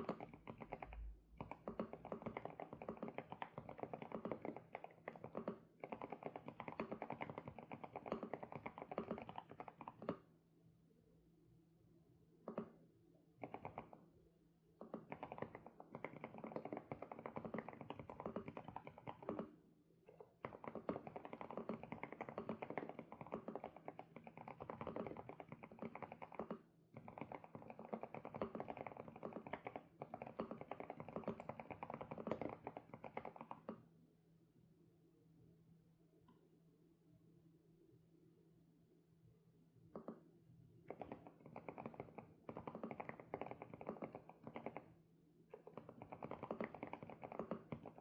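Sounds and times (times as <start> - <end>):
fast typing on mechanical keyboard: 0.0 - 10.2, 13.4 - 14.0, 14.8 - 19.5, 20.4 - 33.8, 40.9 - 44.9, 45.6 - 48.0.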